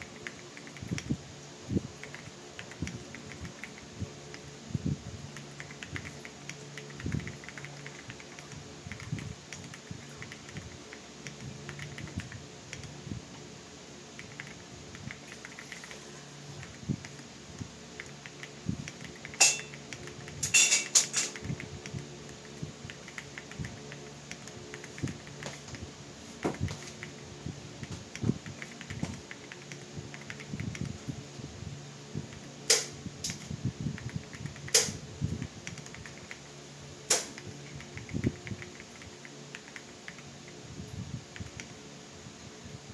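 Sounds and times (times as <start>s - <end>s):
soft keyboard keystrokes: 2.0s - 4.5s, 5.4s - 13.0s, 14.2s - 17.3s, 18.0s - 20.4s, 21.4s - 25.8s, 27.8s - 31.1s, 32.3s - 36.4s, 37.2s - 40.3s.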